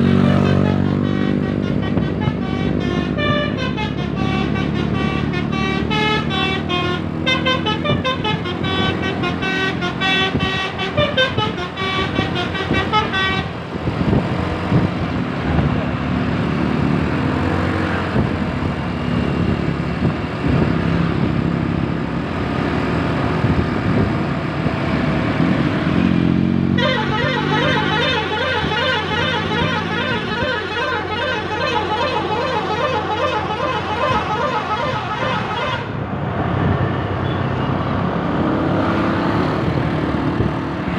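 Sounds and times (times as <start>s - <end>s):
multi-tone bus horn tune: 0.0s - 15.2s, 25.9s - 36.3s, 37.1s - 40.9s.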